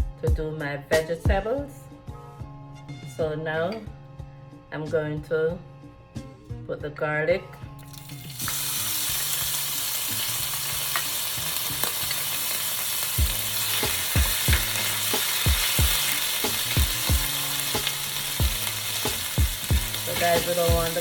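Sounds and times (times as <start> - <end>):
garlic sizzling in hot oil: 7.8 - 21.0.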